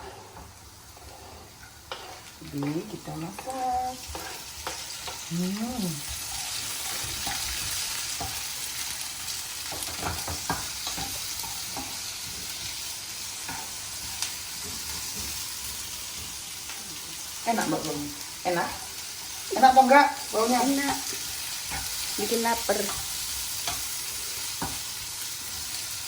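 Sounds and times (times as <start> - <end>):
spatula scraping a pan: 0.0 - 5.2, 6.0 - 8.6
food sizzling in a pan: 0.0 - 26.0.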